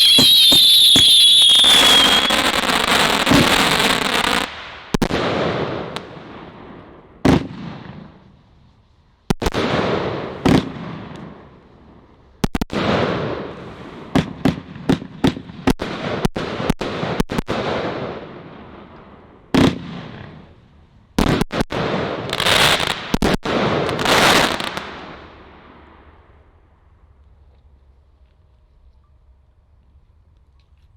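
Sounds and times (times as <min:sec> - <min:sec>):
firework shots: 0:00.0 - 0:08.4, 0:09.2 - 0:11.6, 0:12.4 - 0:20.6, 0:21.2 - 0:26.4.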